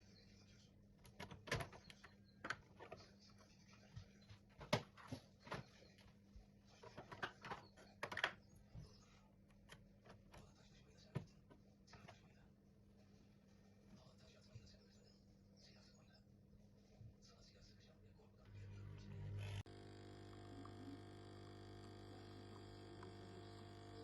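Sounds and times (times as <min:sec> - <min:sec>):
low steady hum: 0:18.3 - 0:24.0.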